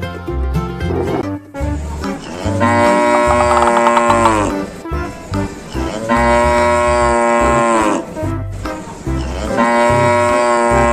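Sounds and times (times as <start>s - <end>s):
background music with steady beat: 0.0s - 10.7s
cow mooing: 2.2s - 4.6s, 5.8s - 8.1s, 9.2s - 10.9s.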